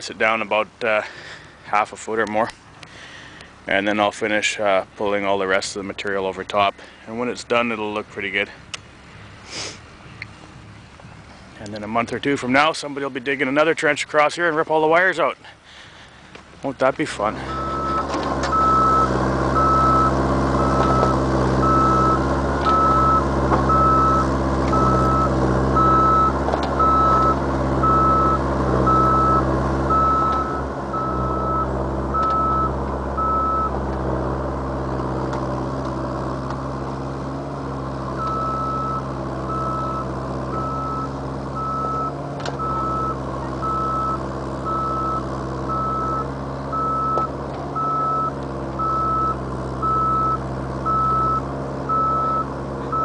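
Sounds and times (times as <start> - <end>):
diesel engine running: 0.0 - 53.0
travel alarm beeping: 17.5 - 33.7, 38.2 - 53.0.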